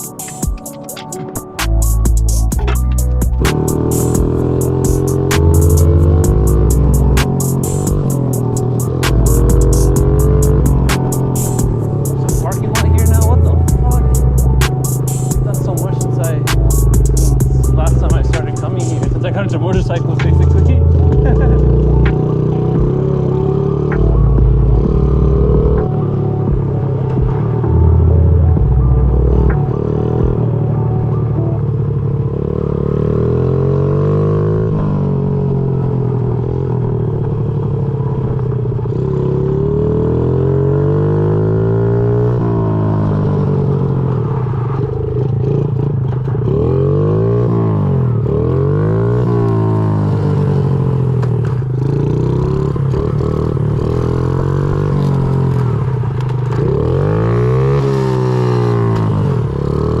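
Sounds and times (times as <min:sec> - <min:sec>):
small motorbike engine running: 0:02.2 - 0:27.8, 0:41.3 - 1:00.0.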